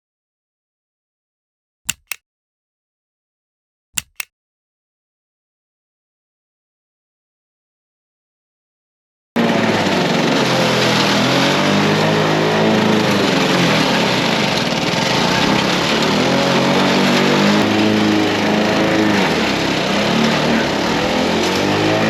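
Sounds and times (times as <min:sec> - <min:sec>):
lawn mower engine running: 0:09.4 - 0:22.0.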